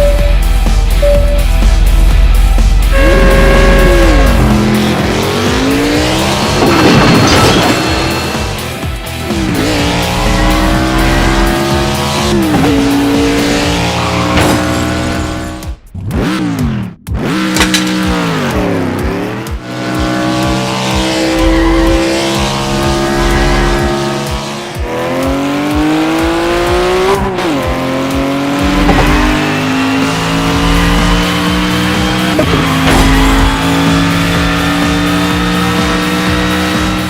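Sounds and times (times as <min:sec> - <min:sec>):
race car engines revving: 0:00.0 - 0:37.0.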